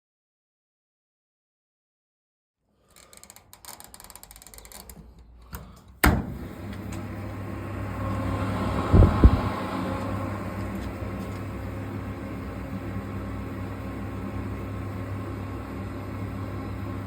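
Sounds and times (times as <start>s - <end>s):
tumble dryer clicks and rattles: 2.9s - 7.2s
tumble dryer motor humming: 4.7s - 17.0s.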